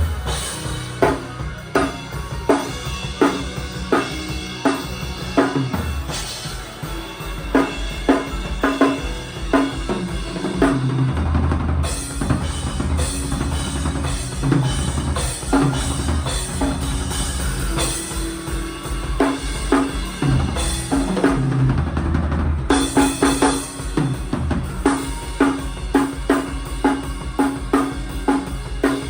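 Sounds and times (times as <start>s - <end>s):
sustained low bass: 0.0s - 23.1s
drum kit playing: 0.0s - 29.0s.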